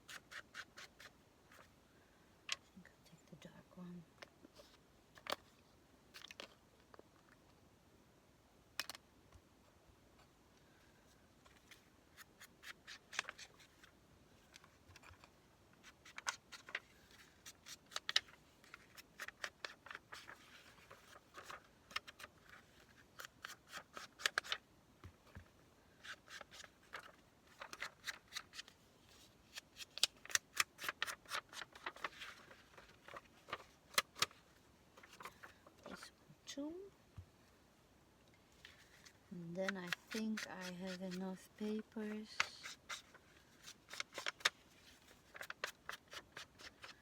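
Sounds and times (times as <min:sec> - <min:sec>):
hand tool clicking on paper: 0:39.7 - 0:41.2.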